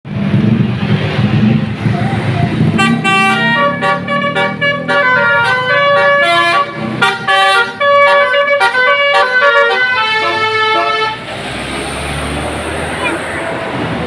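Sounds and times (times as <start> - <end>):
musical bus air horn: 2.7 - 11.3.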